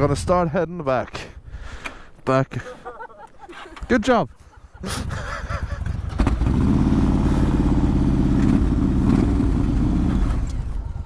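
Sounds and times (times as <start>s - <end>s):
motorcycle engine running: 5.6s - 11.0s.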